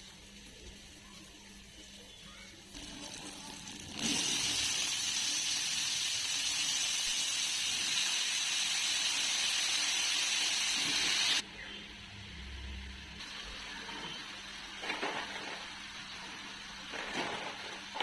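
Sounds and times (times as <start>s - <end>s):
steady hissing: 0.0s - 11.4s.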